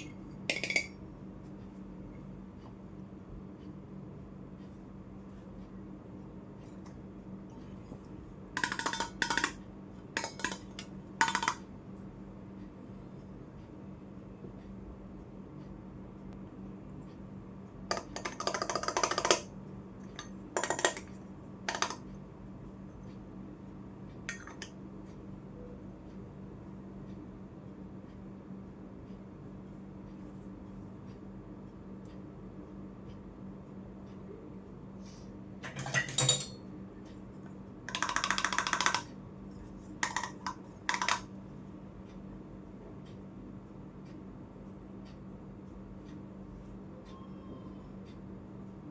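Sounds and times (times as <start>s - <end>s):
faint steady hum: 0.0s - 48.9s
toy kitchenware clinking: 0.5s - 1.0s, 35.6s - 36.6s
toy pieces clinking and tapping: 8.6s - 9.6s.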